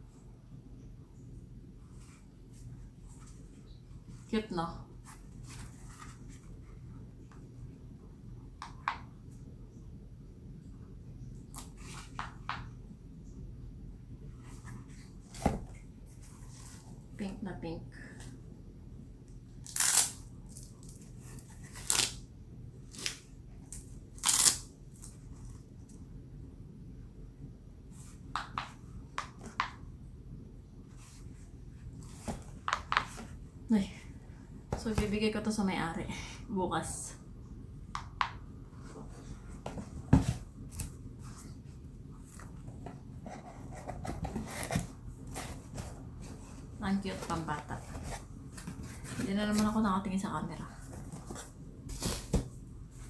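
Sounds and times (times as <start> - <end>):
shoe packaging rustling: 50.8 - 52.6.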